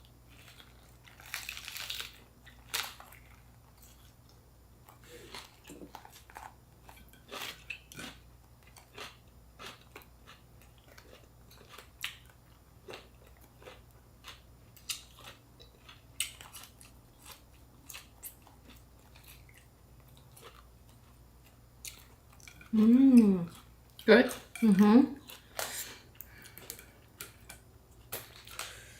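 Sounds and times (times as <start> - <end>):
faint low hum: 0.0 - 28.9
crunchy chewing: 0.3 - 24.6.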